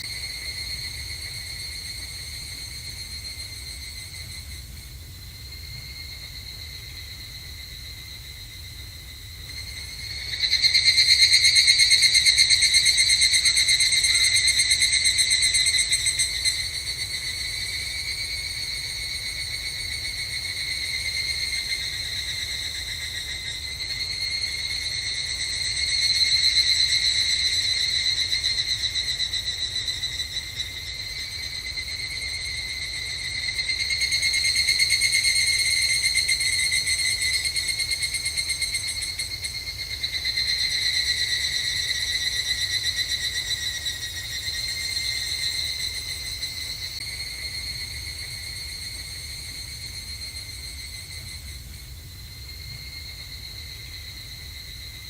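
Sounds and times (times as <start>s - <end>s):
cicadas calling: 0.0s - 55.0s.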